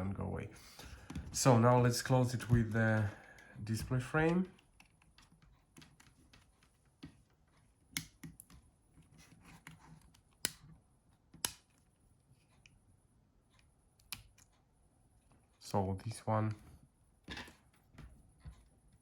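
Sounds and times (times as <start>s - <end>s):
sharp plastic clicks: 10.1s - 11.8s.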